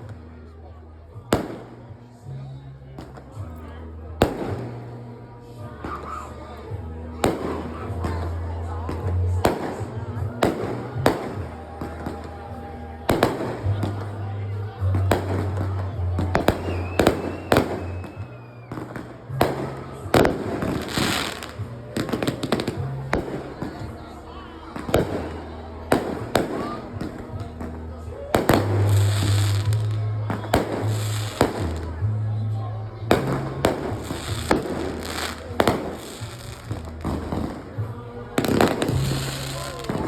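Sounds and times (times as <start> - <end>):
fireworks crackling: 1.2 - 1.8, 4.2 - 5.0, 7.2 - 32.2, 33.0 - 40.0
fireworks bangs: 1.3 - 1.8, 13.1 - 14.2, 14.9 - 24.0, 24.8 - 32.0, 33.1 - 40.0
fireworks pops: 1.3 - 1.8, 4.2 - 4.9, 14.9 - 23.9, 24.8 - 32.0, 33.1 - 37.7, 38.4 - 40.0.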